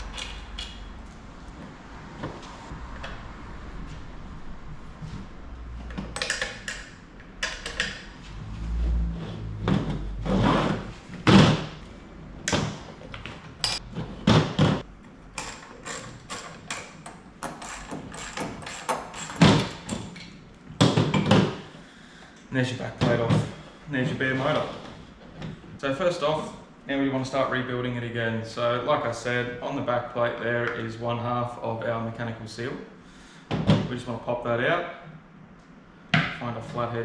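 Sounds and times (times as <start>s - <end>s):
clicks knocks and clatter: 0.0s - 1.4s.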